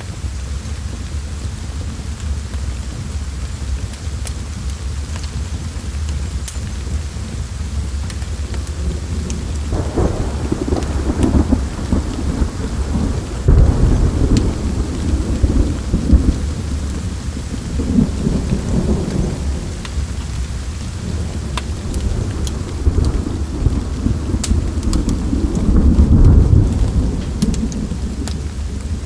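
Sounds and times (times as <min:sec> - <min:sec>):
steady rain: 0:00.0 - 0:29.0
wood fire crackling: 0:00.0 - 0:29.0
rolling thunder: 0:07.6 - 0:29.0.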